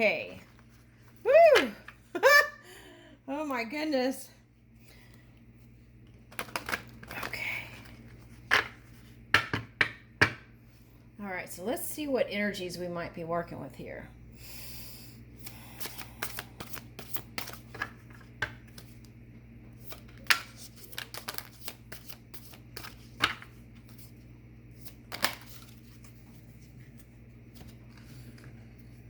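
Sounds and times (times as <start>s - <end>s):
cards shuffling: 15.8s - 19.1s, 19.8s - 28.6s.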